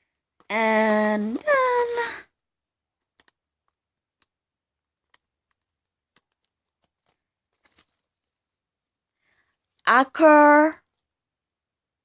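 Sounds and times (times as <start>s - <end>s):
faint sharp clicks and taps: 3.0s - 8.3s.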